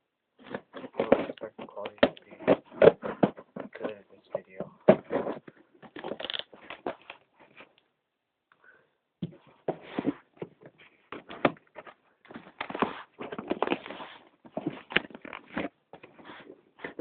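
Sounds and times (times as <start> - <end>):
package rustling and crinkling: 4.9 - 7.8.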